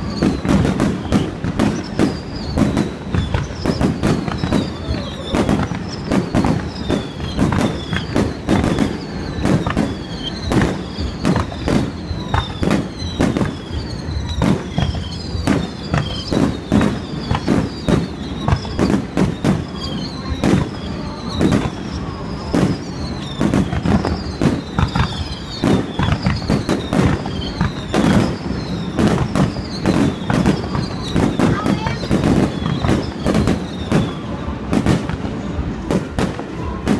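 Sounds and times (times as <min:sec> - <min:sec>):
falling firework whistles: 0:00.0 - 0:36.9.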